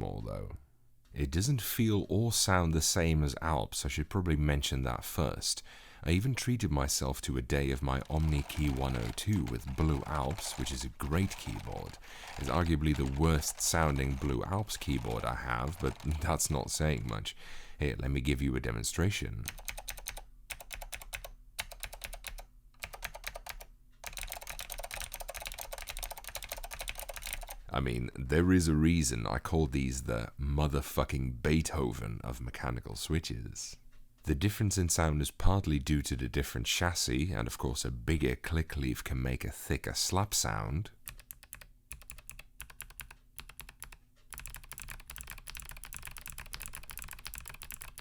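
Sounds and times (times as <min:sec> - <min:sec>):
mechanical keyboard typing: 0:07.8 - 0:17.1, 0:19.4 - 0:27.6, 0:41.1 - 0:48.0.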